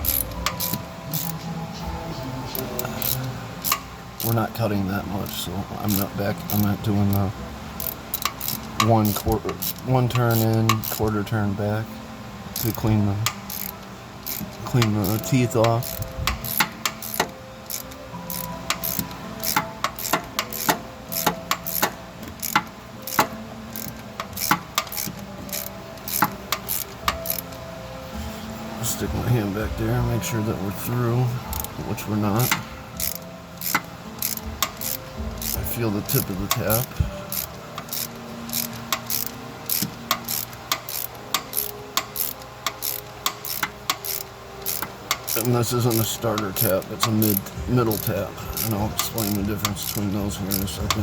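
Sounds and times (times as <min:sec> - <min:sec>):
thread tap clicking and scraping: 0:00.0 - 0:01.5, 0:12.6 - 0:27.5, 0:32.4 - 0:51.0.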